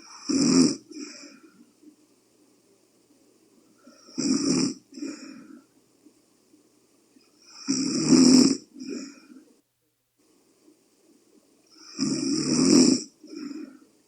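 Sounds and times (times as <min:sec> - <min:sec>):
person snoring loudly: 0:00.0 - 0:01.2, 0:04.0 - 0:05.2, 0:07.4 - 0:09.2, 0:11.8 - 0:13.8.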